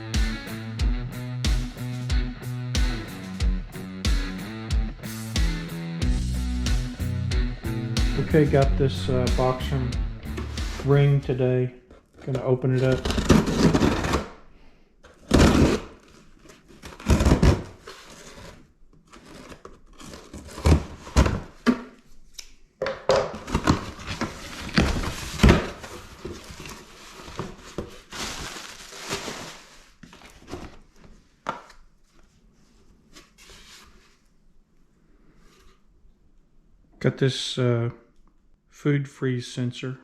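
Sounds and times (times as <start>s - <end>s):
tape tearing: 12.2s - 14.4s, 15.1s - 21.6s
packaging rustling and crinkling: 15.1s - 21.7s, 23.4s - 34.2s.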